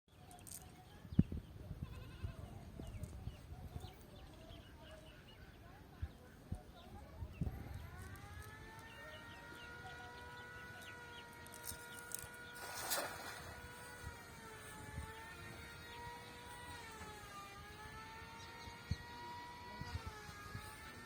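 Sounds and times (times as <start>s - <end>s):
small engine drone: 7.4s - 21.0s.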